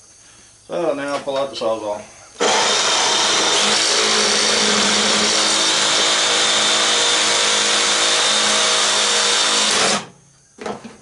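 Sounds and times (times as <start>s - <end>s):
reciprocating saw cutting metal: 2.4s - 10.1s.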